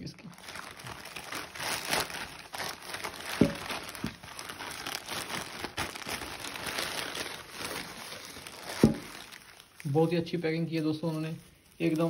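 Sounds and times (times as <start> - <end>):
packaging crinkling and rustling: 0.2 - 12.0
knocks on parcel: 8.7 - 9.2.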